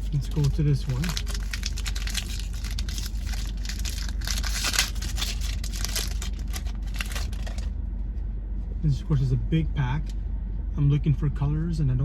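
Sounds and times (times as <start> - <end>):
wrapper tearing and crinkling: 0.0 - 7.7.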